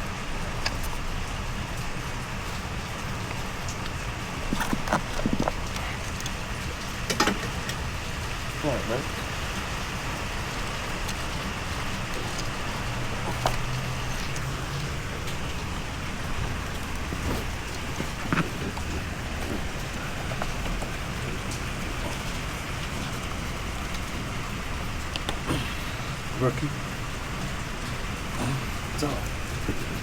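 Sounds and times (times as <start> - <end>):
steady hiss: 0.0 - 30.0.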